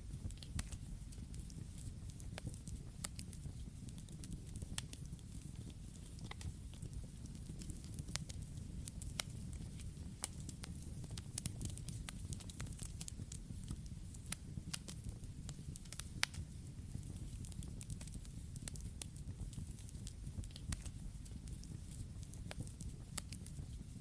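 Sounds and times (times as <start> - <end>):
campfire crackling and popping: 0.1 - 24.0.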